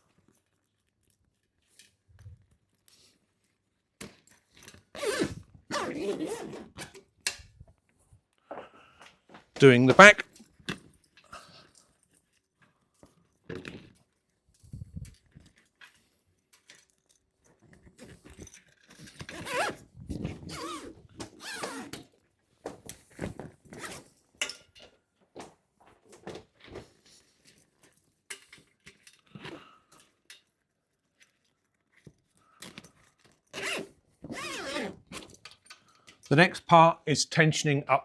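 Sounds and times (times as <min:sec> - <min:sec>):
zip being pulled: 0:04.9 - 0:06.9, 0:19.2 - 0:22.0, 0:23.7 - 0:24.0, 0:33.5 - 0:35.3.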